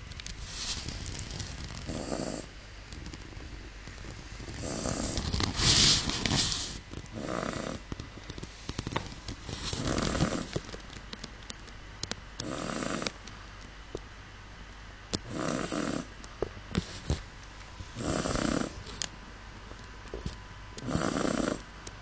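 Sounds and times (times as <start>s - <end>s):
dog snoring: 1.7s - 3.6s, 4.5s - 7.9s, 9.6s - 10.6s, 12.4s - 13.2s, 15.2s - 16.1s, 18.0s - 18.9s, 20.8s - 21.7s.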